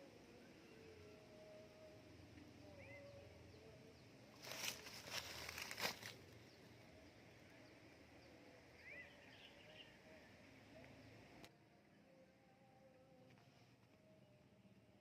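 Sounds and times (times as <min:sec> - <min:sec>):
faint outdoor ambience: 0:00.0 - 0:15.0
small birds chirping: 0:01.8 - 0:11.5
loud rustling: 0:04.4 - 0:06.2.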